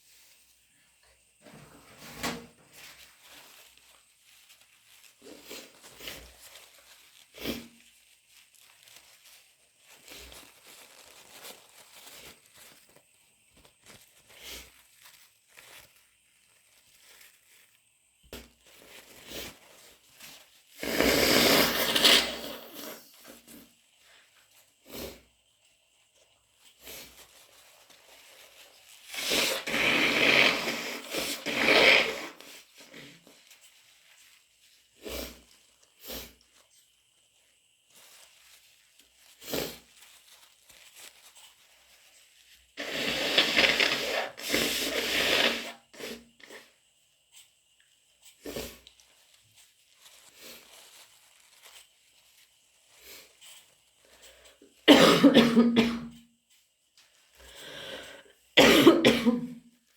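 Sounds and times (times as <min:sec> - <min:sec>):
tissue crinkling and rustling: 0:00.0 - 0:54.8, 0:55.6 - 0:58.6
nose blowing into a tissue: 0:20.7 - 0:23.6, 0:24.8 - 0:25.3, 0:28.7 - 0:33.2, 0:35.0 - 0:36.4, 0:39.4 - 0:39.9, 0:42.8 - 0:46.8.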